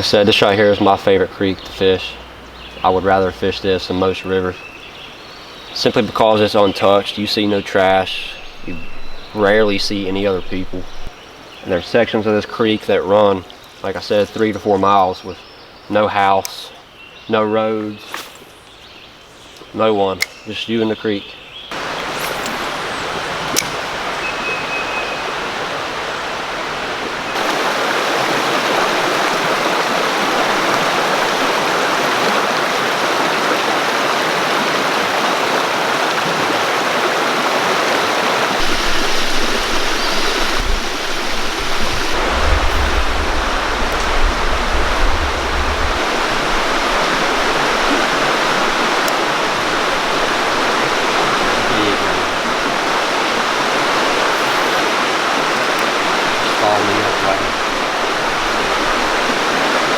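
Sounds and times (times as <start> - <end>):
creek water rushing over rocks: 5.9 - 13.0, 21.7 - 59.9
low rumble: 8.0 - 11.1, 38.6 - 46.8.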